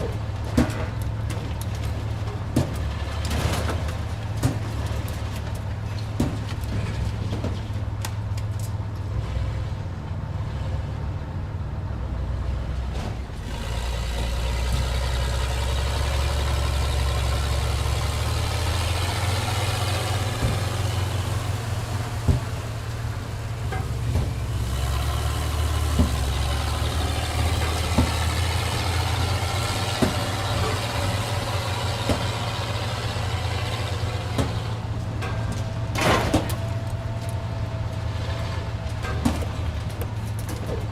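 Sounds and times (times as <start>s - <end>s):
engine idling: 13.4s - 40.9s
metallic clanks: 34.3s - 37.0s.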